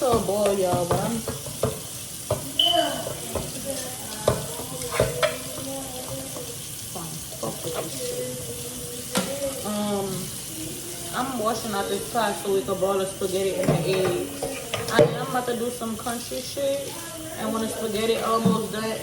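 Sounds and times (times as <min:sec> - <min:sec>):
pot and utensils clanking: 0:00.0 - 0:09.6, 0:13.5 - 0:15.5
food sizzling: 0:00.0 - 0:19.0
voices talking: 0:02.2 - 0:19.0.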